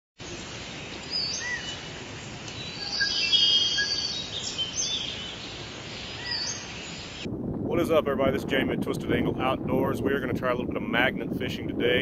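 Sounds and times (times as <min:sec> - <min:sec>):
birds singing: 0:00.2 - 0:07.3
outdoor hiss: 0:00.2 - 0:07.3
bird trill: 0:00.9 - 0:07.2.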